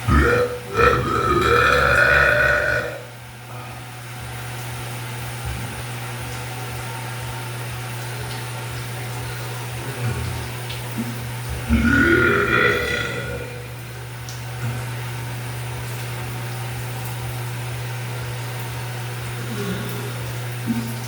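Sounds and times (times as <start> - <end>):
person burping: 0.0 - 3.1, 11.7 - 13.8, 19.4 - 20.9
steady low hum: 0.0 - 16.6.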